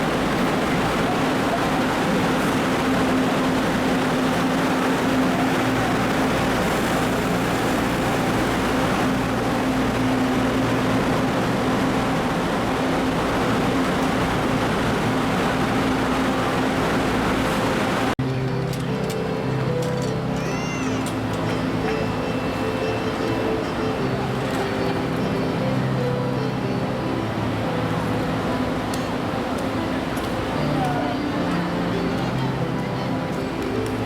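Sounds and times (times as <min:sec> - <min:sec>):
engine running steadily: 0:00.0 - 0:20.2.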